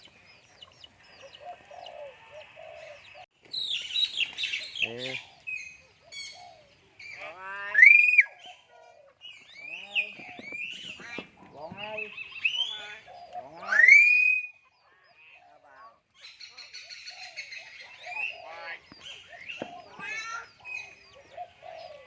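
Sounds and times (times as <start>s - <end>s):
bird whistles: 13.6s - 14.6s.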